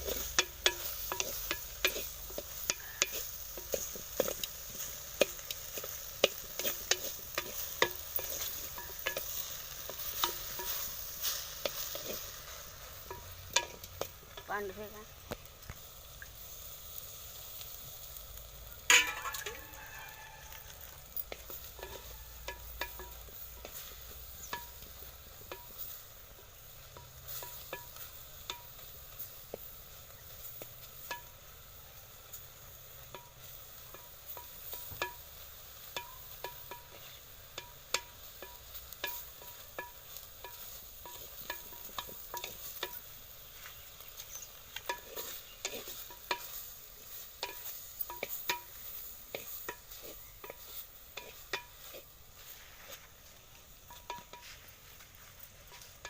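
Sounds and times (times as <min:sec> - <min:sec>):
metallic clank against pan: 0:00.0 - 0:12.3, 0:13.0 - 0:14.5, 0:18.8 - 0:20.0, 0:21.2 - 0:26.0, 0:33.0 - 0:43.1, 0:53.8 - 0:54.5
utensil stirring in pan: 0:00.0 - 0:56.0
vegetables sizzling in oil: 0:00.0 - 0:56.0.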